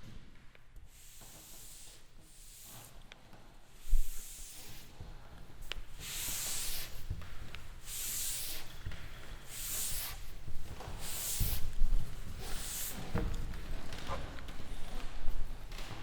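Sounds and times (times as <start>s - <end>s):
spray bottle hissing bursts: 0.9s - 2.9s, 6.0s - 7.1s, 7.8s - 10.3s, 10.9s - 11.8s, 12.4s - 13.2s.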